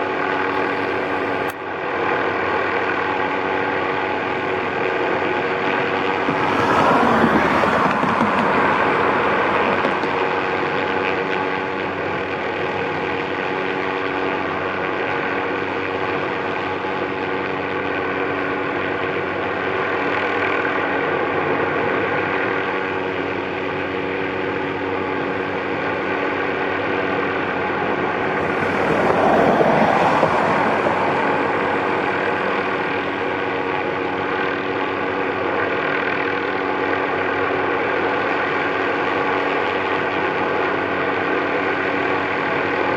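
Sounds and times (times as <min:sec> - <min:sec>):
helicopter turbine and rotor: 0:00.0 - 0:42.9
turbine whine: 0:04.2 - 0:13.3, 0:25.2 - 0:35.4.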